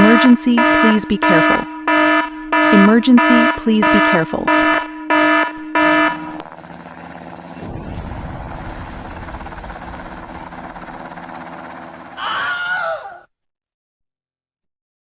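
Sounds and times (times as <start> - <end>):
alarm buzzer honks: 0.0 - 6.4
steady hum: 0.0 - 12.2
person crying out: 12.2 - 13.3.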